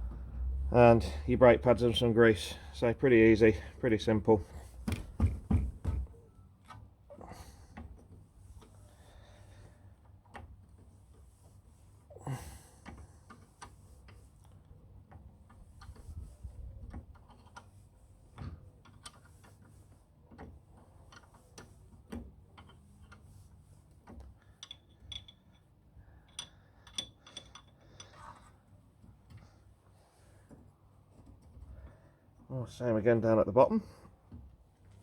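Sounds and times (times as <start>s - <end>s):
spanner clicking and knocking: 24.0s - 28.4s.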